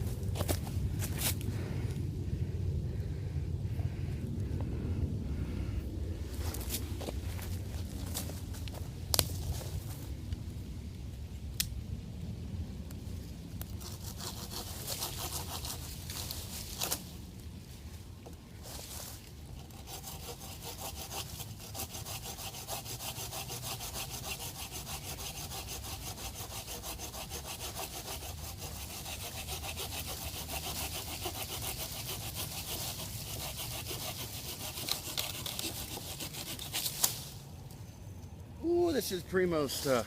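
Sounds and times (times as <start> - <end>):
hand saw cutting wood: 13.8 - 17.0, 19.6 - 37.2.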